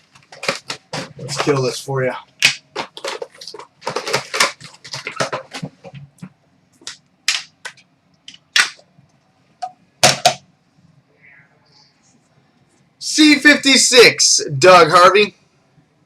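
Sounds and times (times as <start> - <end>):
packaging crackling being torn: 0.0 - 1.7, 2.4 - 5.6.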